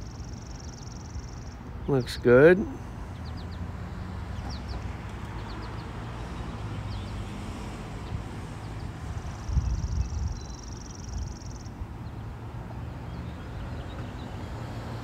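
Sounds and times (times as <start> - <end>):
birds chirping: 0.0 - 15.0.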